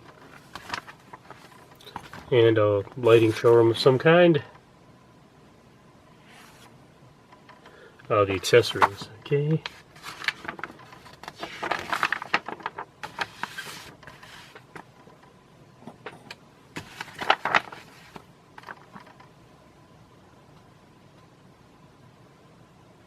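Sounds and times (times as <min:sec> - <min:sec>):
paper pages rustling and turning: 0:00.0 - 0:03.7, 0:06.2 - 0:06.7, 0:08.3 - 0:15.2, 0:16.7 - 0:19.3.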